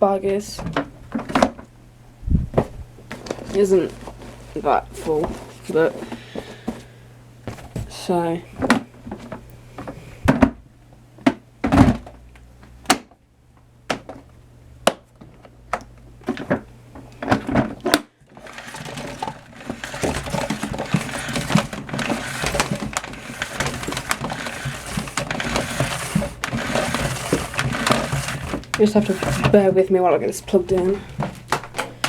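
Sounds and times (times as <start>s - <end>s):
crackling rustle: 3.0s - 6.9s, 18.3s - 29.6s.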